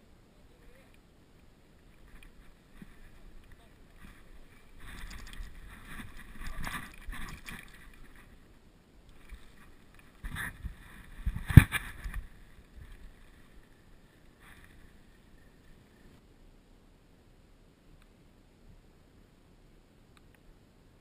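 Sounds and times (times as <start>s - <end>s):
rustling handling noise: 1.8s - 8.5s.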